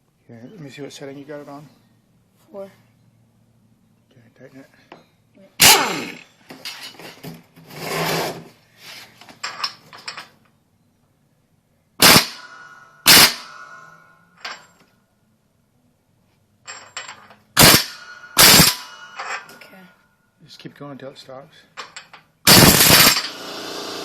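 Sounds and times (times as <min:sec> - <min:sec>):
air impact wrench bursts: 0:05.6 - 0:06.2, 0:12.0 - 0:14.0, 0:17.6 - 0:19.4, 0:22.5 - 0:24.0
metallic ring: 0:12.3 - 0:14.8, 0:16.7 - 0:20.2.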